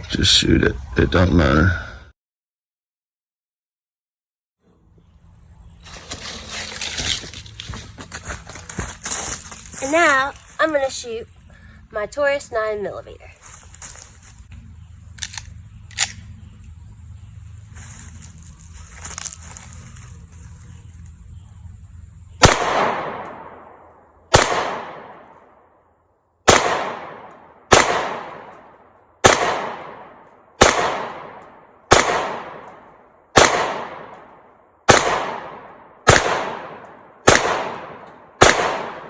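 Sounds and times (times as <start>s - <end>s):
pistol shots: 22.4s - 25.6s, 26.4s - 39.0s.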